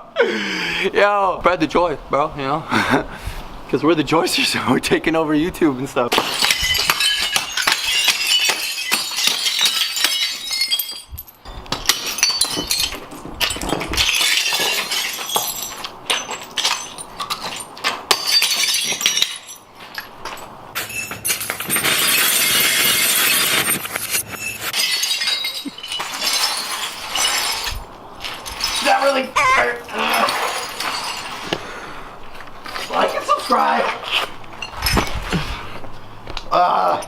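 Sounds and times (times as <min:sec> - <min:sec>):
plates shattering under sledgehammer: 0:06.1 - 0:19.6, 0:20.8 - 0:31.6
shards clinking: 0:06.2 - 0:31.8, 0:32.6 - 0:35.4.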